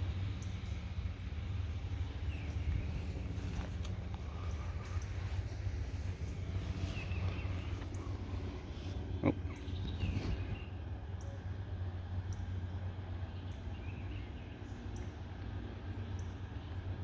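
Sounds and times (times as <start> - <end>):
steady low rumble: 0.0 - 17.0
faint bird chirps: 1.9 - 11.6.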